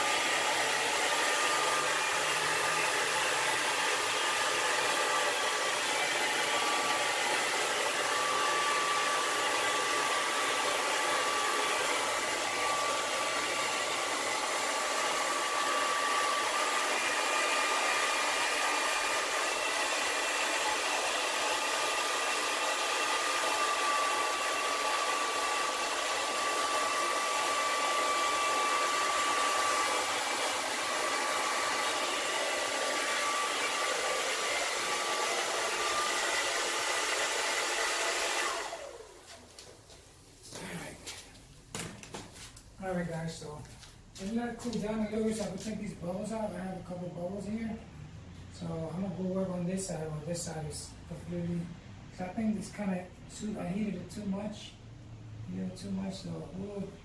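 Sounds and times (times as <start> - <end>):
hot-air blower hissing: 0.0 - 39.6.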